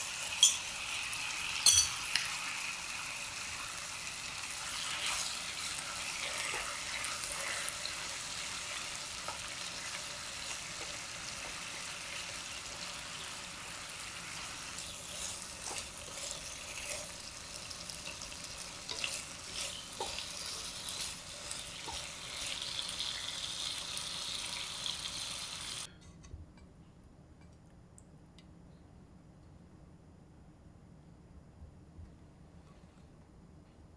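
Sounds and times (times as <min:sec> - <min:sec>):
food sizzling in a frying pan: 0:00.0 - 0:25.9.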